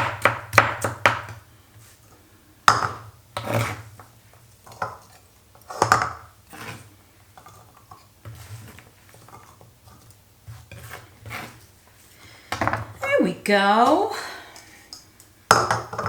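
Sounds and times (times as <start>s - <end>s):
knife scraping cutting board: 10.5s - 11.7s.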